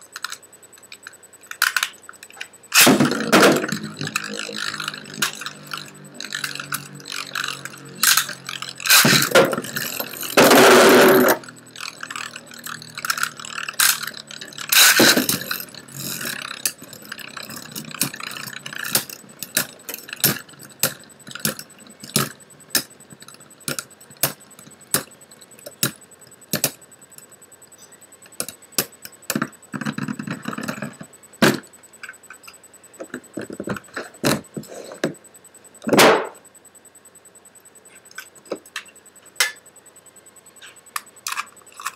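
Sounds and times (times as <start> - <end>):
spinning tops clicking: 0.1 - 27.3
spinning tops scraping: 0.2 - 26.8.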